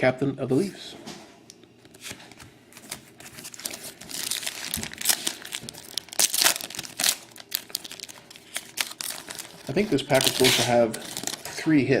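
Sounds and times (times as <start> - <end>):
foil wrapper crinkling and tearing: 2.8 - 11.7.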